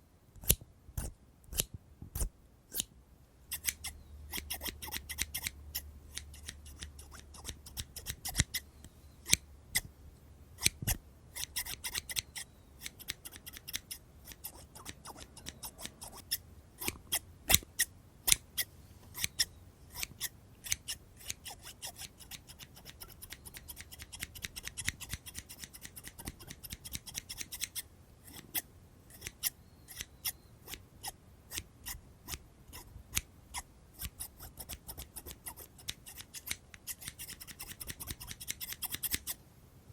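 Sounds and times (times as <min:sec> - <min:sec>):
scissors snipping: 0:00.4 - 0:02.9, 0:03.5 - 0:08.6, 0:09.2 - 0:09.9, 0:10.6 - 0:30.8, 0:34.0 - 0:39.4.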